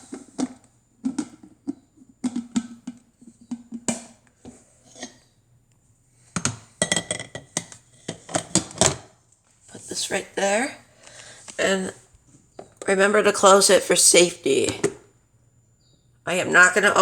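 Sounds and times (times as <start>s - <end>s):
coffee maker parts clicking and knocking: 0.0s - 5.2s, 6.4s - 9.1s.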